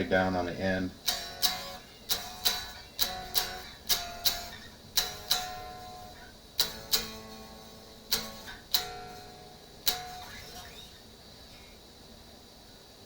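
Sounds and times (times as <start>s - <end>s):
electric guitar chords: 0.9s - 11.2s.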